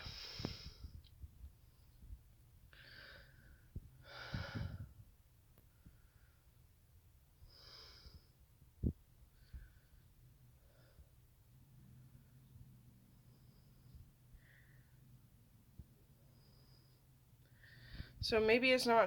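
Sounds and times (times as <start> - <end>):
person breathing close to microphone: 0.0 - 1.1, 2.7 - 5.1, 7.4 - 11.2, 11.9 - 15.2, 16.1 - 18.2.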